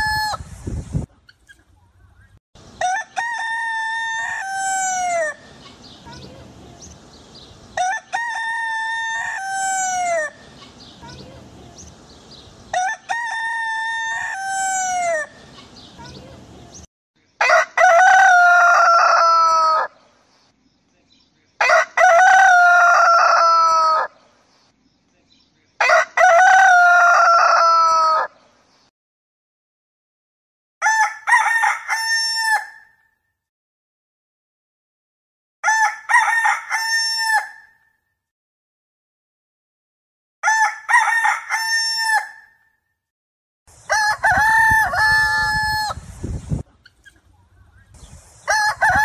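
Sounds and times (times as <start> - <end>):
roosters crowing: 2.8 - 5.6, 7.8 - 10.5, 12.7 - 15.4, 17.4 - 20.0, 21.6 - 24.2, 25.8 - 28.4, 35.6 - 37.7, 40.4 - 42.5, 43.8 - 46.0, 48.4 - 49.0.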